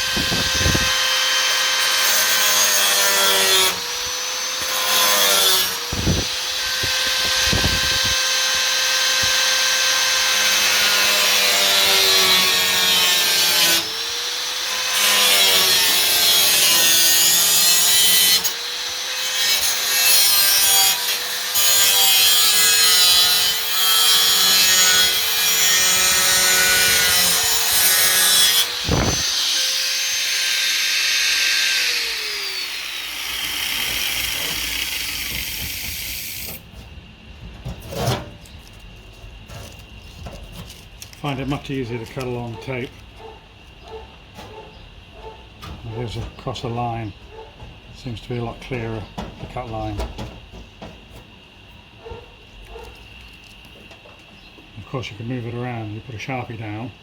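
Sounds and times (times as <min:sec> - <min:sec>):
power tool cutting sheet steel: 0:00.0 - 0:36.6.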